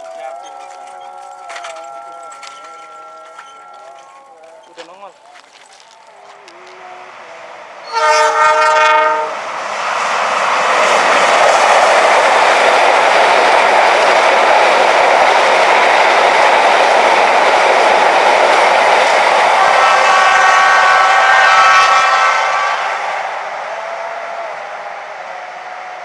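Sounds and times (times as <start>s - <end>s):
train wheels on rails: 0.0s - 26.0s
train horn blast: 6.0s - 9.6s, 18.5s - 26.0s.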